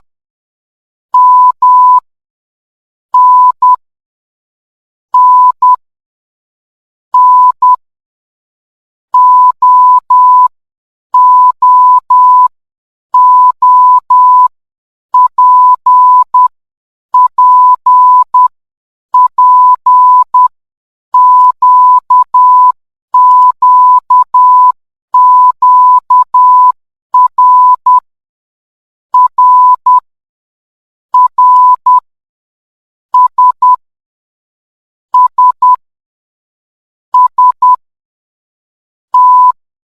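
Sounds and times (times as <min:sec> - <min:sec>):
morse code beeps: 0:01.2 - 0:02.0, 0:03.2 - 0:03.8, 0:05.2 - 0:05.8, 0:07.2 - 0:07.8, 0:09.2 - 0:10.5, 0:11.2 - 0:12.5, 0:13.2 - 0:14.5, 0:15.2 - 0:16.5, 0:17.2 - 0:18.5, 0:19.2 - 0:20.5, 0:21.2 - 0:28.0, 0:29.2 - 0:30.0, 0:31.2 - 0:32.0, 0:33.2 - 0:33.8, 0:35.2 - 0:35.8, 0:37.2 - 0:37.8, 0:39.2 - 0:39.6.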